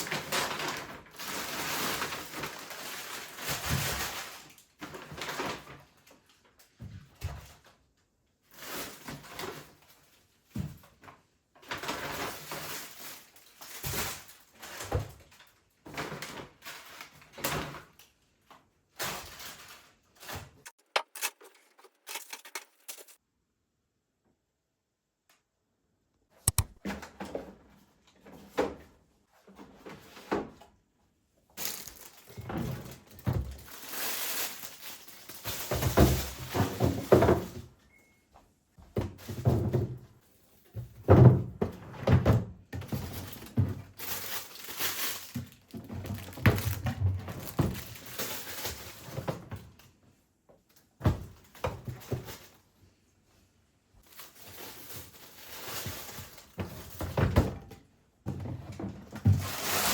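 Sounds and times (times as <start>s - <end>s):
rustling: 20.6s - 23.2s, 31.6s - 37.0s, 43.0s - 49.1s
objects knocking when set down: 20.7s - 23.2s.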